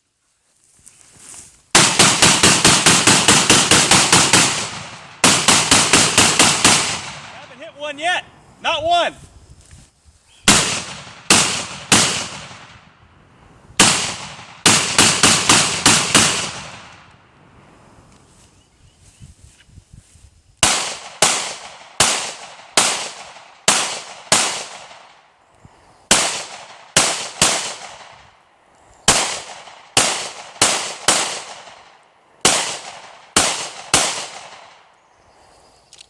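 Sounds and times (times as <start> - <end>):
pistol shots with echo: 1.8 - 7.6, 10.5 - 12.9, 13.8 - 17.0, 20.6 - 25.2, 26.1 - 28.2, 29.1 - 34.8.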